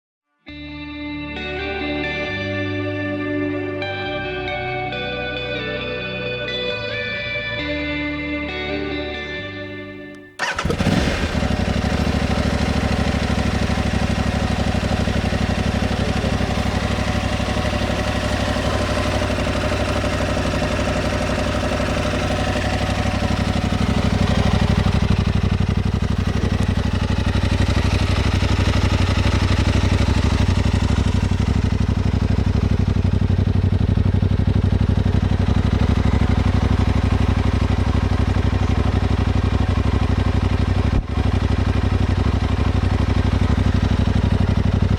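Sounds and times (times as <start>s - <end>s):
motorcycle engine idling: 10.4s - 44.9s.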